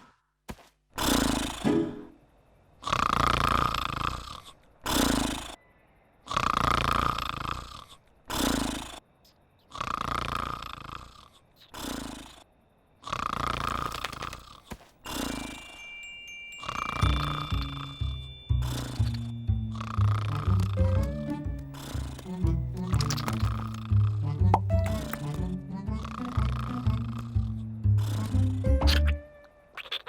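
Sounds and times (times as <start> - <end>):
cartoon sheep snoring: 1.0 - 1.7, 2.8 - 5.6, 6.2 - 9.0, 9.6 - 15.8, 16.6 - 29.1
musical notes: 16.2 - 29.7.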